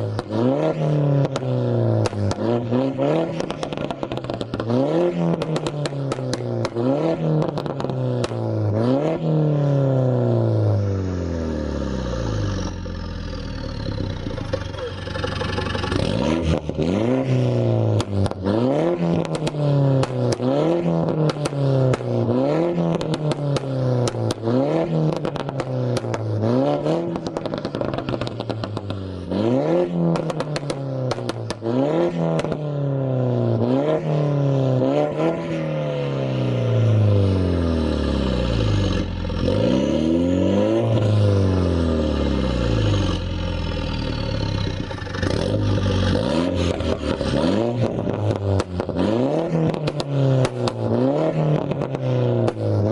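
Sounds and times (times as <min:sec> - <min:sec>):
exhaust crackles and pops: 0:00.0 - 0:08.7, 0:12.6 - 0:32.7, 0:40.9 - 0:52.9
car engine revving: 0:00.0 - 0:52.9.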